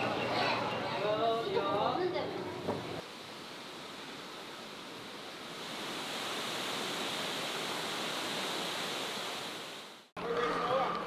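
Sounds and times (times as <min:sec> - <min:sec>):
rushing water: 0:03.0 - 0:10.2.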